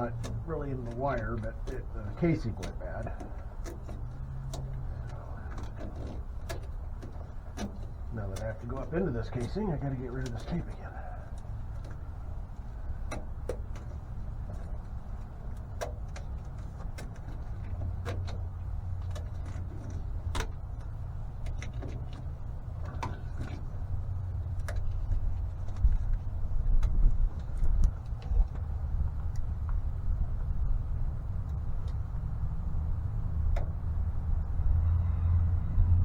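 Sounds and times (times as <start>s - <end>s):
small clicks and crackles: 0.0s - 32.4s
low rumble: 22.3s - 36.0s.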